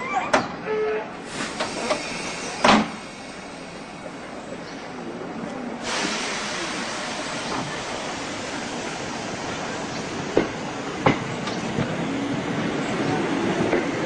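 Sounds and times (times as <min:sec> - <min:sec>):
train rumbling: 0:00.5 - 0:14.0.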